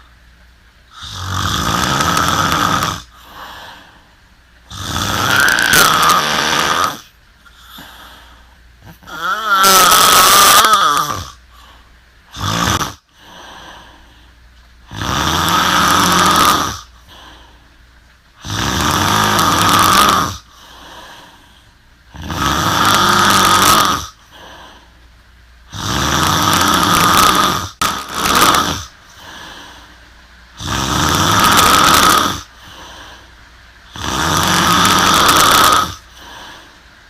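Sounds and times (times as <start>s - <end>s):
woman snoring: 0.9s - 4.0s, 4.7s - 11.4s, 12.3s - 14.2s, 14.9s - 17.5s, 18.4s - 21.5s, 22.1s - 24.9s, 25.7s - 30.0s, 30.6s - 33.3s, 33.9s - 36.8s
quiet breaths: 3.0s - 4.7s, 7.4s - 9.1s, 11.4s - 12.3s, 13.0s - 14.9s, 16.8s - 18.4s, 20.4s - 22.1s, 24.1s - 25.7s, 28.9s - 30.6s, 32.4s - 33.9s, 35.9s - 37.0s.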